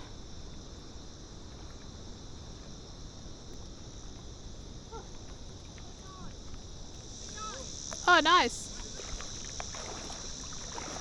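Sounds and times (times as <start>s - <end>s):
insects buzzing: 0.0s - 11.0s.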